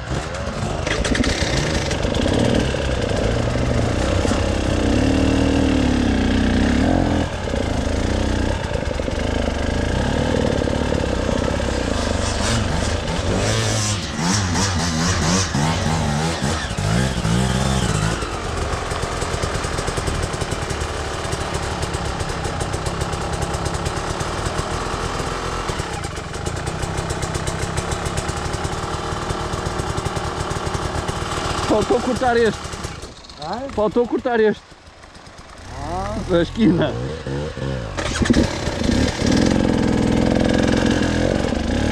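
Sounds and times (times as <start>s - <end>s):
small engine revving: 0.0s - 20.4s, 35.4s - 41.9s.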